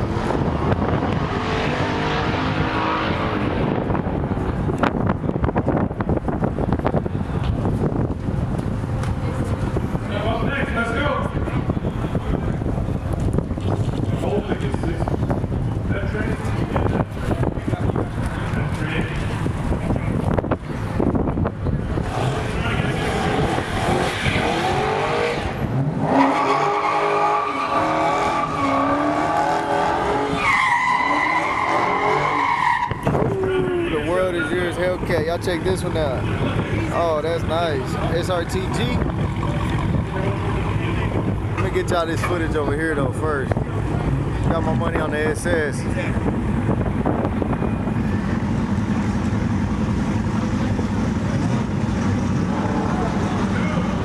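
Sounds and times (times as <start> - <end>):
wind buffeting microphone: 0.0 - 26.0, 32.7 - 52.3
car engine revving: 0.0 - 54.0
car tires squealing: 22.0 - 34.6.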